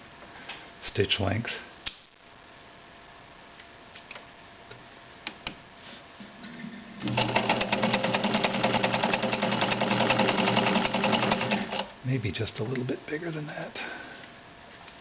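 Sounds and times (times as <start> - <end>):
sewing machine sewing: 7.0 - 11.9.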